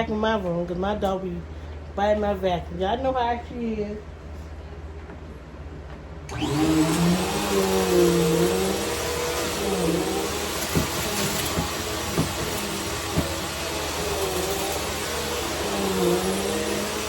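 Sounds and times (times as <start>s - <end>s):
vacuum cleaner motor hum: 6.3s - 17.0s.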